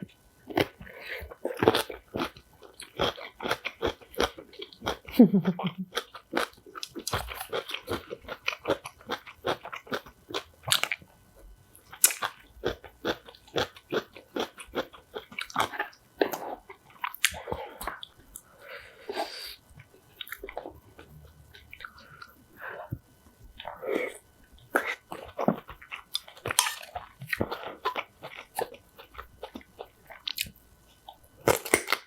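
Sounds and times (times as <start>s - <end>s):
crisp crunching and chewing: 0.5s - 5.1s, 5.9s - 11.0s, 23.6s - 32.0s.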